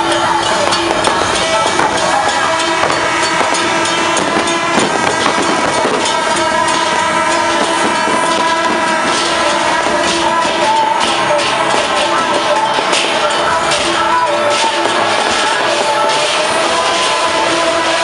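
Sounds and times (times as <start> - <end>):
fast clashing percussion: 0.0 - 18.0
held melody notes: 0.0 - 18.0.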